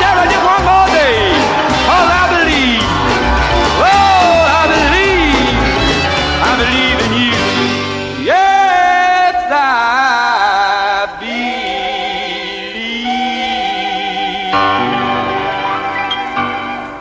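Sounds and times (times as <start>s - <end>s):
song with held vibrato notes: 11.5s - 17.0s.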